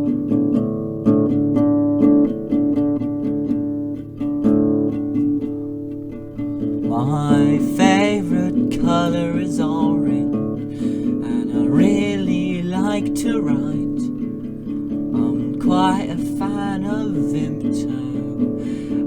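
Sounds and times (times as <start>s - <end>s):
strummed acoustic guitar: 0.0s - 19.0s
wavering melody line: 4.7s - 19.0s.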